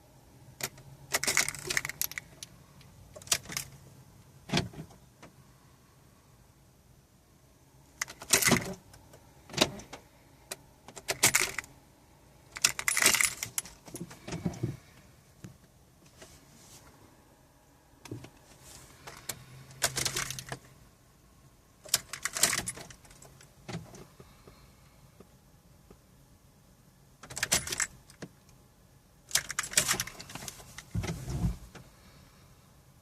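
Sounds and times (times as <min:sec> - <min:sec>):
car keys jangling: 0:00.6 - 0:02.5, 0:03.1 - 0:03.8, 0:08.0 - 0:08.8, 0:10.9 - 0:11.7, 0:12.5 - 0:14.5, 0:19.0 - 0:20.7, 0:21.8 - 0:24.0, 0:27.2 - 0:28.2, 0:29.3 - 0:31.4.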